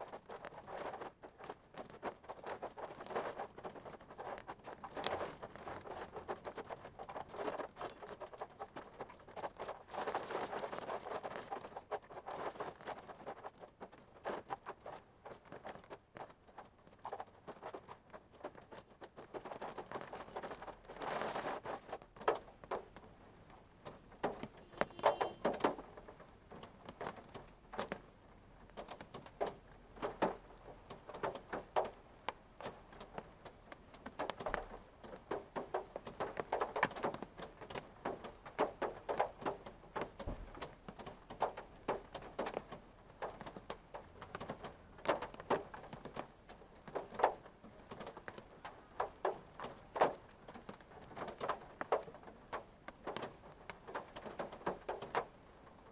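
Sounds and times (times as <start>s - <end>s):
raindrops tapping on car: 22.0s - 55.8s.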